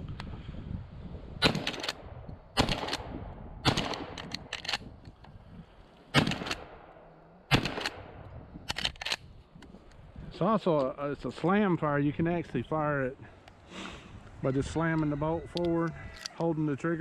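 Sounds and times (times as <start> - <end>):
shotgun shots echoing: 1.4 - 4.5, 6.1 - 8.3
shotgun slide pumped clack: 3.7 - 4.9.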